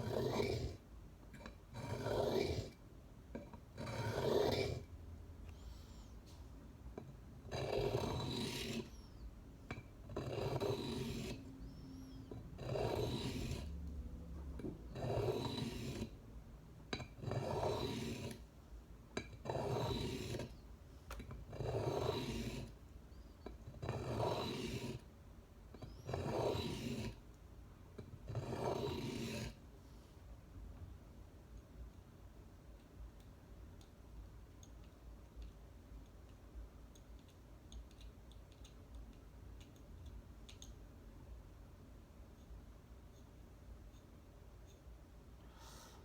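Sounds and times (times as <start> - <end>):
knife scraping on sharpening stone: 1.4 - 2.7, 3.8 - 4.8, 7.5 - 13.8, 14.9 - 16.1, 16.9 - 18.4, 19.2 - 20.6, 21.5 - 22.8, 23.4 - 25.0, 25.8 - 27.2, 28.3 - 29.5.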